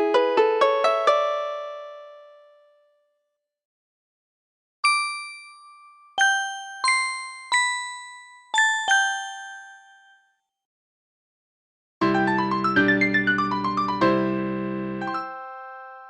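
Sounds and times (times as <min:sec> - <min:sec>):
phone ringtone chime melody: 0:04.8 - 0:10.3, 0:15.0 - 0:16.0.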